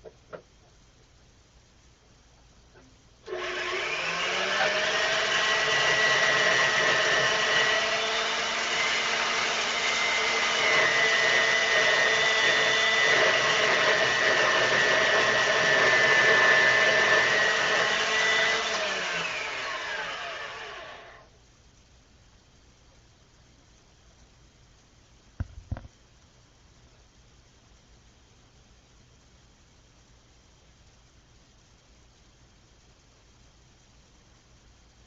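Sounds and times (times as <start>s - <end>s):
power tool motor whining: 3.3s - 21.2s.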